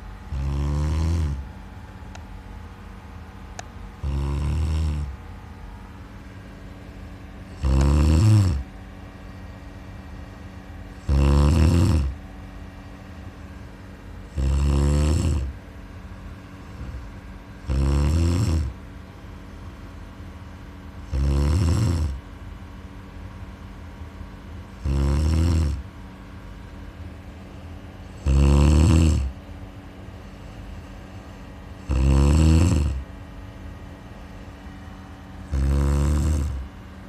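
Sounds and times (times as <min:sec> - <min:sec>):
person snoring: 0:00.3 - 0:01.4, 0:04.0 - 0:05.2, 0:07.5 - 0:08.6, 0:11.0 - 0:12.2, 0:14.3 - 0:15.5, 0:16.7 - 0:18.8, 0:21.0 - 0:22.2, 0:24.8 - 0:25.8, 0:28.1 - 0:29.3, 0:31.8 - 0:33.0, 0:35.5 - 0:36.6.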